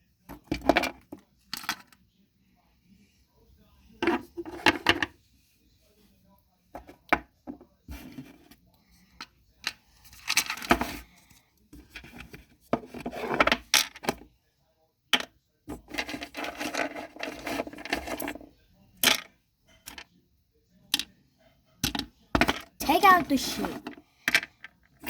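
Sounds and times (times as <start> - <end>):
rummaging through toy pieces: 15.7 - 18.5.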